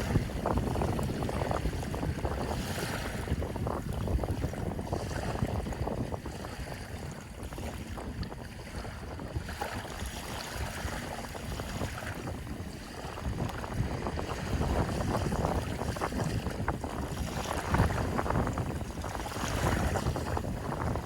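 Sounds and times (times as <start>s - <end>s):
sea waves lapping: 0.0s - 21.0s
wind buffeting microphone: 0.0s - 21.0s.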